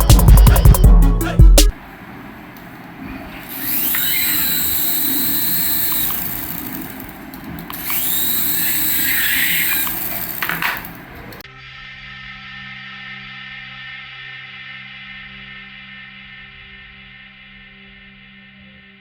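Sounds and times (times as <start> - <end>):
electric toy motor whirring: 3.4 - 11.4.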